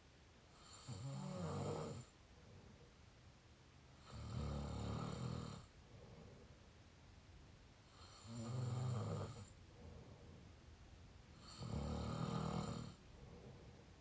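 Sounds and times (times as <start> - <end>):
person snoring: 0.6 - 2.1, 4.0 - 5.7, 7.9 - 9.5, 11.4 - 13.0.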